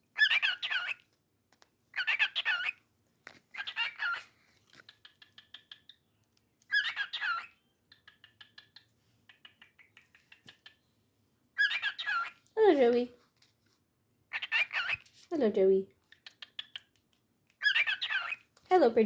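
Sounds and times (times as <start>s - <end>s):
cockatiel chattering chirps: 0.2s - 1.0s, 1.9s - 2.8s, 3.5s - 6.1s, 6.7s - 10.8s, 11.6s - 12.4s, 14.3s - 15.0s, 16.0s - 18.5s
cockatiel warbling squawks: 0.2s - 1.0s, 3.5s - 4.3s, 6.7s - 7.6s, 11.6s - 12.4s, 14.3s - 15.0s, 17.6s - 18.4s.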